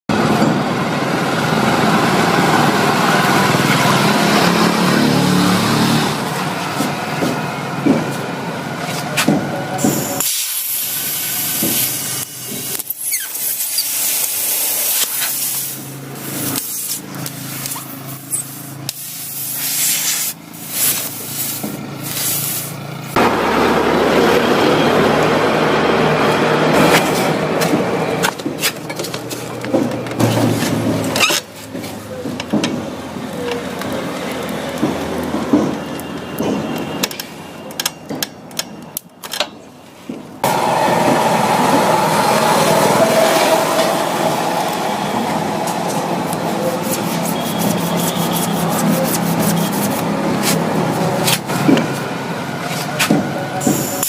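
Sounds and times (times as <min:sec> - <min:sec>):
compressed air hissing: 0:09.8 - 0:22.8.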